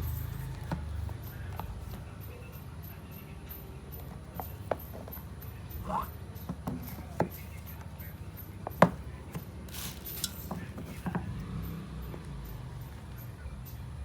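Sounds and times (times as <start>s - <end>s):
clicks and knocks from handling: 3.5s - 13.2s
packaging rustle: 9.7s - 11.1s.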